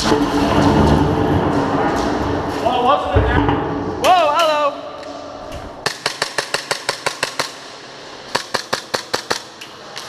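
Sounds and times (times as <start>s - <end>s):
airsoft gun firing bursts: 5.8s - 7.7s, 8.3s - 9.6s.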